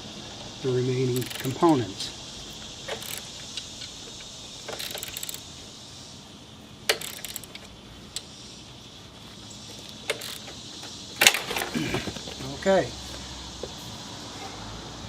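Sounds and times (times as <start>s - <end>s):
wrench and bolt clicking: 1.1s - 1.7s, 2.8s - 5.5s, 6.9s - 8.3s, 9.8s - 10.6s.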